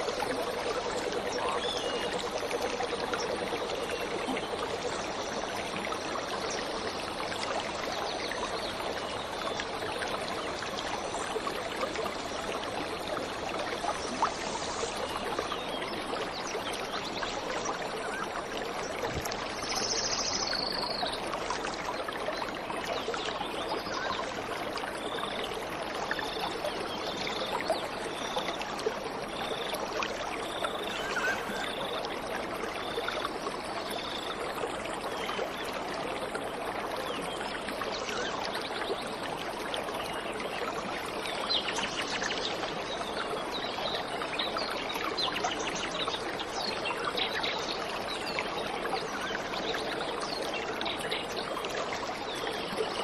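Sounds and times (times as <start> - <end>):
bird high call: 30.8 - 31.8.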